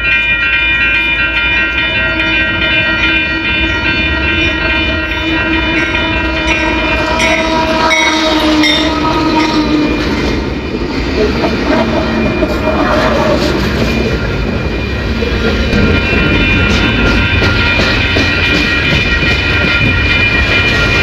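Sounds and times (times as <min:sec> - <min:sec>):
train wheels clicking on rails: 0:00.0 - 0:21.0
locomotive air horn: 0:05.0 - 0:10.3.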